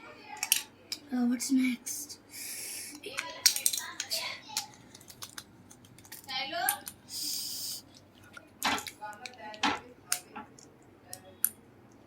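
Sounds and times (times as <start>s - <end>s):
plastic bricks clicking together: 3.1s - 7.0s.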